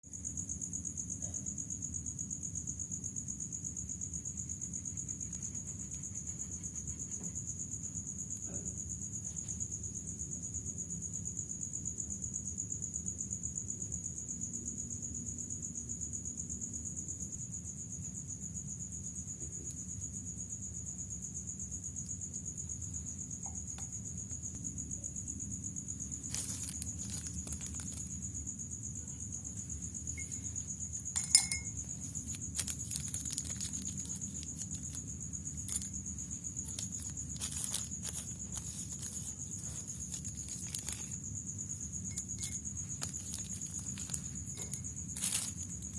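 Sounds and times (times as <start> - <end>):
crickets chirring: 0.0 - 45.9
light clicks and clinks: 26.2 - 28.2, 29.6 - 41.2, 41.8 - 45.9.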